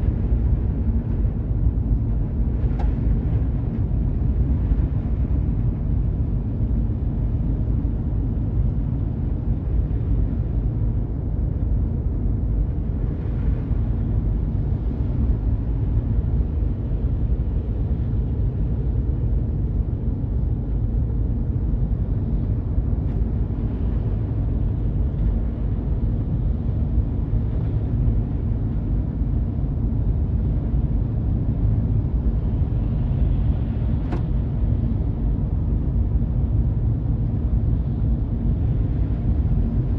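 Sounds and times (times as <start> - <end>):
car driving rumble: 31.6 - 35.6
brief click: 34.0 - 34.3.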